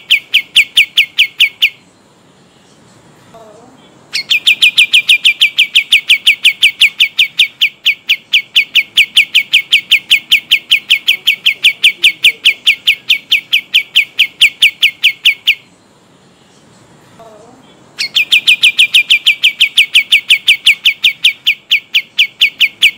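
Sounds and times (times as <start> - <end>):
bulbul rolling trill: 3.5 - 15.7, 18.0 - 22.9.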